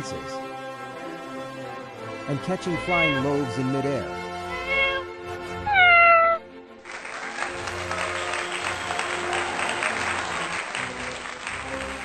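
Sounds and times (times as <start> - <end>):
light background music: 0.0 - 12.0
cartoon cat meowing: 2.8 - 3.3, 4.5 - 6.4
crowd applauding: 6.8 - 12.0.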